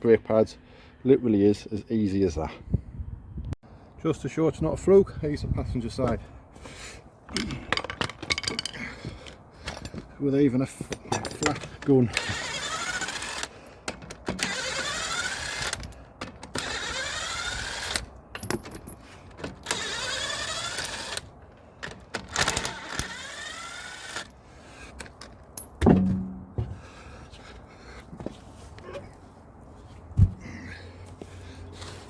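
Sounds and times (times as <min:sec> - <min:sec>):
impact wrench whining: 0:10.8 - 0:24.3
heavy thump: 0:25.8 - 0:27.0, 0:30.2 - 0:30.5.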